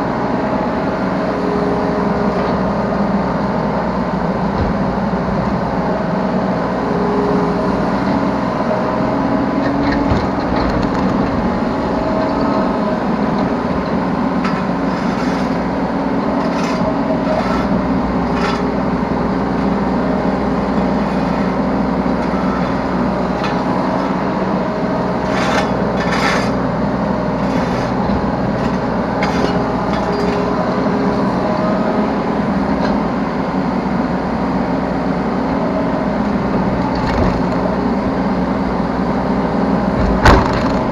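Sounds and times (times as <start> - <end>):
diesel engine humming: 0.0 - 40.9
hydraulic whine: 6.8 - 34.6
steel bucket scraping soil: 10.0 - 31.1.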